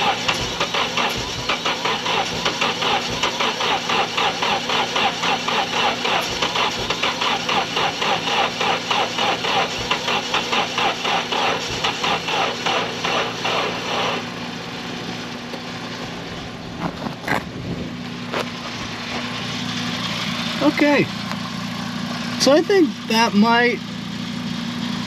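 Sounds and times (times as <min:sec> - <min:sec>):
engine cranking on starter: 0:00.0 - 0:14.4.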